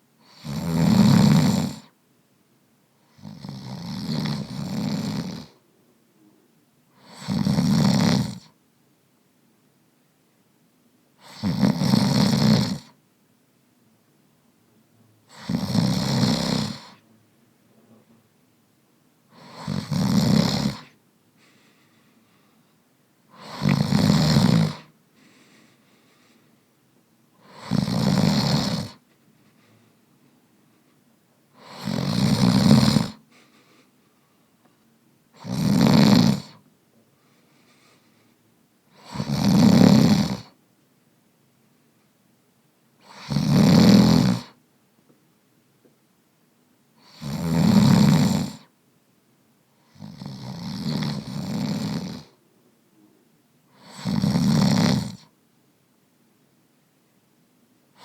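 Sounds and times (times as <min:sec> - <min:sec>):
man snoring: 0:00.2 - 0:01.9, 0:03.1 - 0:05.6, 0:07.0 - 0:08.5, 0:11.2 - 0:12.9, 0:15.3 - 0:17.0, 0:19.3 - 0:21.0, 0:23.3 - 0:24.9, 0:27.4 - 0:29.0, 0:31.6 - 0:33.2, 0:35.4 - 0:36.6, 0:38.9 - 0:40.6, 0:43.0 - 0:44.6, 0:47.0 - 0:48.7, 0:49.8 - 0:52.4, 0:53.7 - 0:55.3
faint breathing: 0:21.3 - 0:23.7, 0:24.8 - 0:26.8, 0:29.0 - 0:31.6, 0:33.2 - 0:34.8, 0:37.0 - 0:39.0.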